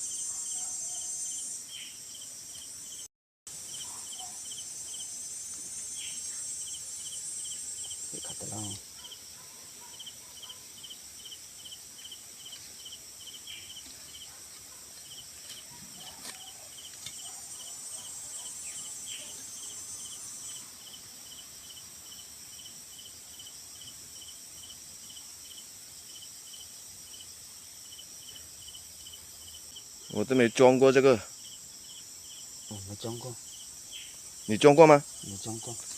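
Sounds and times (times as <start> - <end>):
cricket chirping: 0.0 - 35.9
high-pitched insect drone: 3.7 - 8.8.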